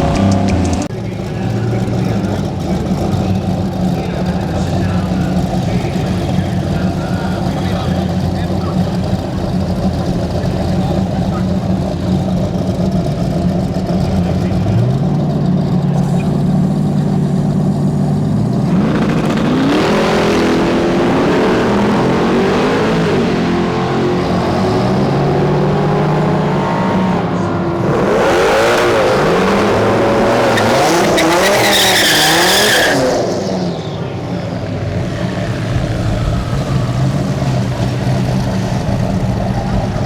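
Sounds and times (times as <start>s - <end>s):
car engine revving: 0.0s - 40.0s
tyres squealing: 16.0s - 33.4s.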